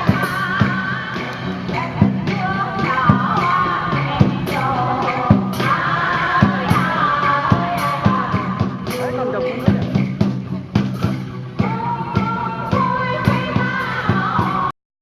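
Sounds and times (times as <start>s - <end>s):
person singing: 0.0s - 10.0s, 11.6s - 14.7s
wavering instrumental melody: 0.0s - 13.8s
steady drum beat: 0.0s - 14.7s.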